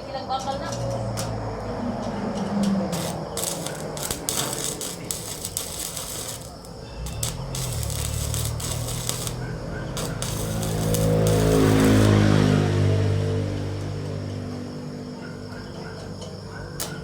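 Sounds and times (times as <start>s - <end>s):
electric arc welding crackling: 2.9s - 12.5s.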